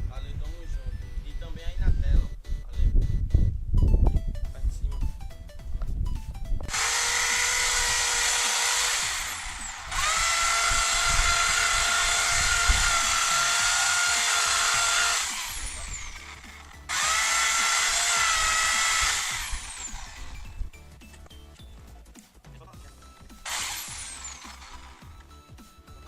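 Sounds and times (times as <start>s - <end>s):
electric drill whining: 6.7s - 20.6s, 23.4s - 25.3s.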